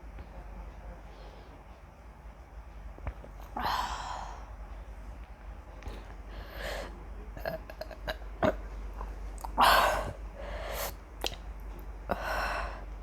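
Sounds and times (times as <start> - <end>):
woman burping: 7.4 - 8.6.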